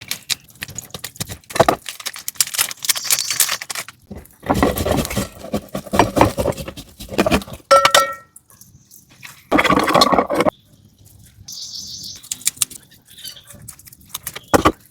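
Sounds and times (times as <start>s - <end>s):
knocks clicks and scraping: 4.1s - 8.2s, 9.5s - 10.6s, 13.7s - 14.9s
ringing metallic clink: 7.7s - 8.3s.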